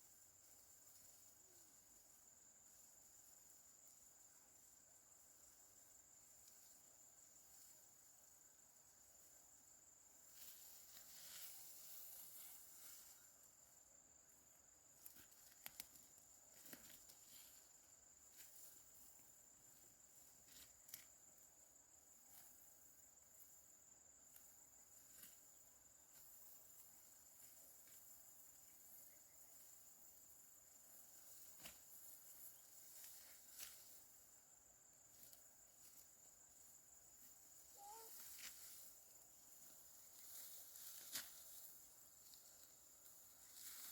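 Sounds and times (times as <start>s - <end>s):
soft clicks and rustles: 15.0s - 17.6s.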